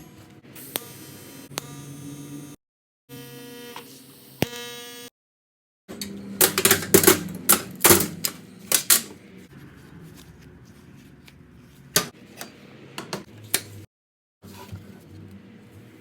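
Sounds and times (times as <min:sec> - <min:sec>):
hard parts clicking: 0:06.0 - 0:09.2
hard parts knocking: 0:06.4 - 0:09.1.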